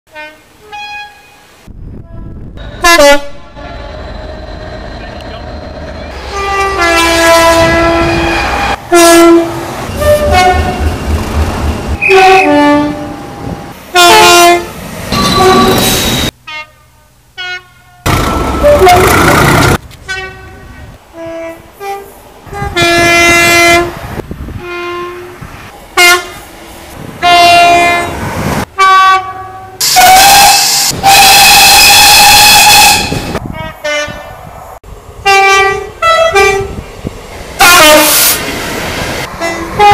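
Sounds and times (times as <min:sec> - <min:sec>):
two-note train horns: 0:00.1 - 0:03.9, 0:06.2 - 0:11.0, 0:12.0 - 0:19.2, 0:20.0 - 0:24.0, 0:24.6 - 0:25.4, 0:26.0 - 0:26.4, 0:27.2 - 0:28.2, 0:28.8 - 0:34.2, 0:37.6 - 0:38.4, 0:39.4 - 0:39.9
passing train rushing: 0:01.0 - 0:16.4, 0:17.4 - 0:39.9.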